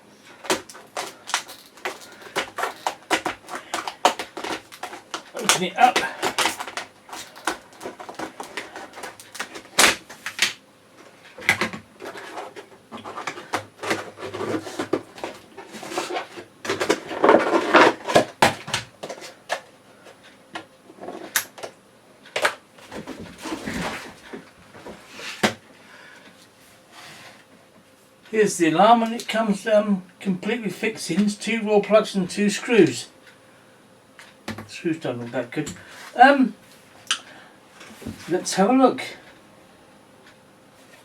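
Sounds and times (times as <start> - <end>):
packaging rustling and crinkling: 0.4 - 19.6.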